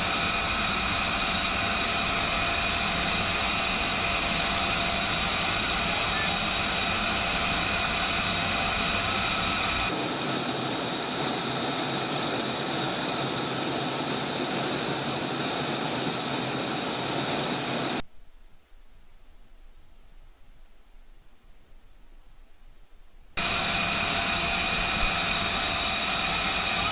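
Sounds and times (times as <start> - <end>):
jet engine whine: 0.0 - 18.0, 23.4 - 26.9.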